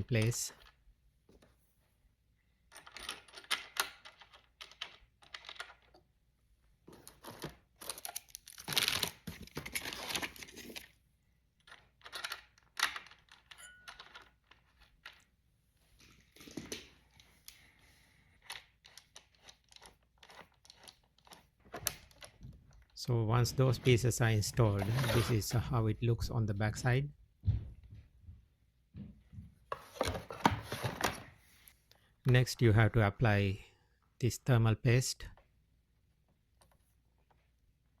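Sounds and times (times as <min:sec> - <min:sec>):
small metal screws rattling: 0:18.4 - 0:21.4.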